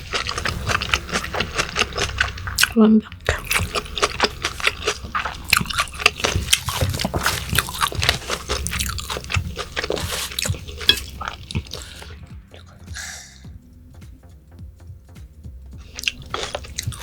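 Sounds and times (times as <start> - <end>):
close chewing with wet smacks: 0.0 - 13.4, 15.8 - 17.0
leaves crunching: 3.6 - 12.0.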